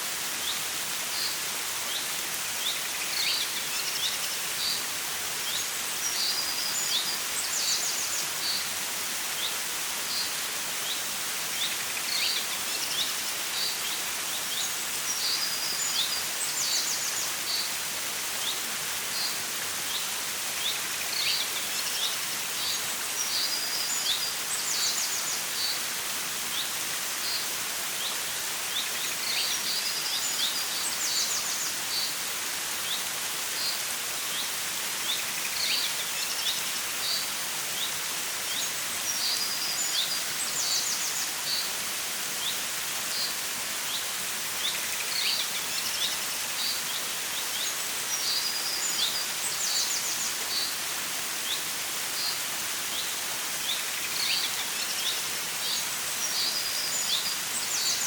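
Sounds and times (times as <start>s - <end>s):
stream flowing: 0.0s - 58.0s.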